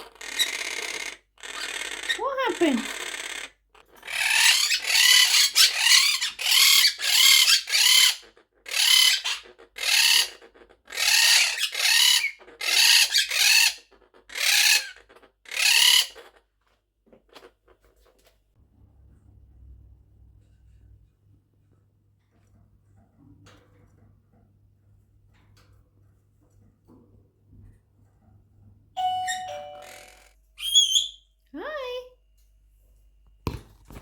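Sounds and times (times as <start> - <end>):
parrot calling loudly: 0.0 - 14.9, 15.5 - 16.2, 29.0 - 31.2.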